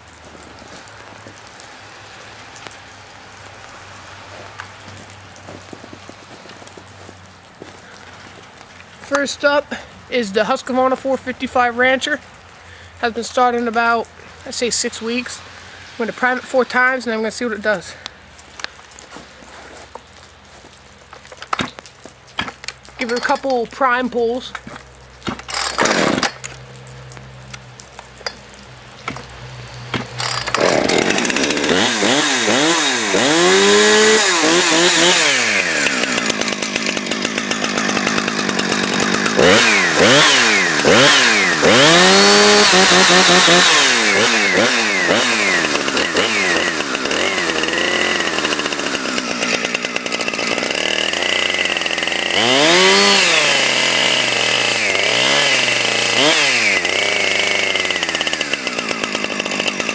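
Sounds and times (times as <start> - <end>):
chainsaw engine revving: 24.5 - 26.8, 29.0 - 59.9.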